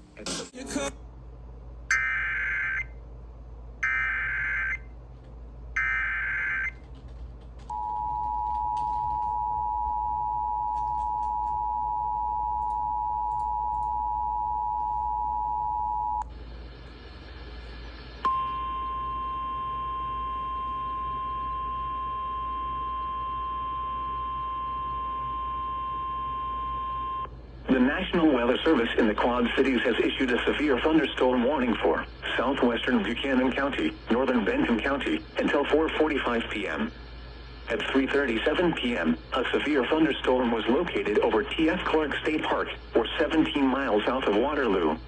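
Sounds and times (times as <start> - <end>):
steady warning alarm tone: 1.9 - 3.0, 3.8 - 5.0, 5.7 - 6.9, 7.7 - 45.0
radio hiss: 16.3 - 18.3, 27.5 - 45.0
data bursts: 27.8 - 45.0.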